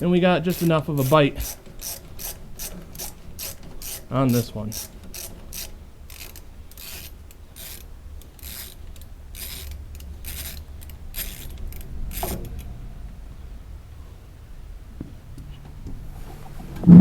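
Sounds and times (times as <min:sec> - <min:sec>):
ratchet wrench clicking: 0:00.0 - 0:12.7.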